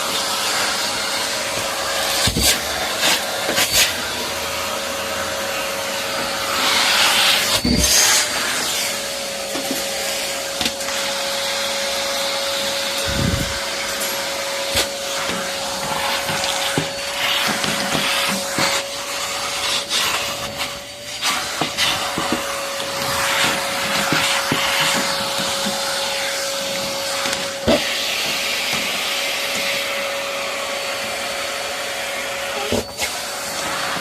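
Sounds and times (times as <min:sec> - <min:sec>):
electric motor whirring: 0:12.9 - 0:14.1.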